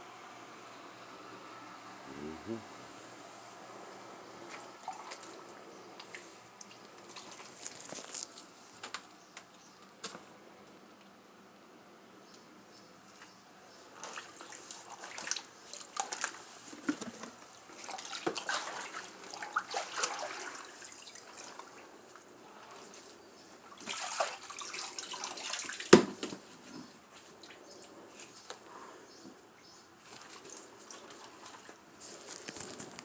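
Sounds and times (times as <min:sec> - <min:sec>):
water sloshing and splashing: 0:04.3 - 0:08.9, 0:13.8 - 0:28.7, 0:30.0 - 0:32.8.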